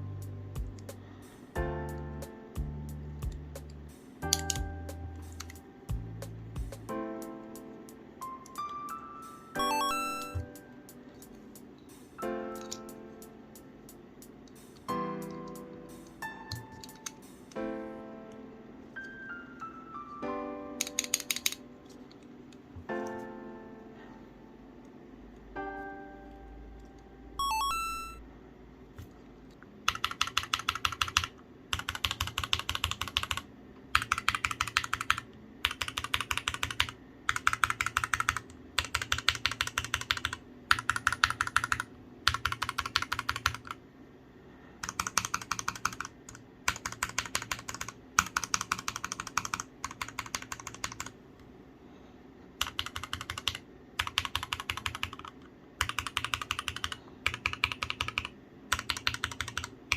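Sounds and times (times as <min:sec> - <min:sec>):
fast typing on mechanical keyboard: 0:04.2 - 0:04.6, 0:16.5 - 0:17.1, 0:20.8 - 0:21.6, 0:29.8 - 0:43.8, 0:44.8 - 0:51.2, 0:52.6 - 0:59.9
short rising electronic tones: 0:09.6 - 0:10.6, 0:27.4 - 0:28.3.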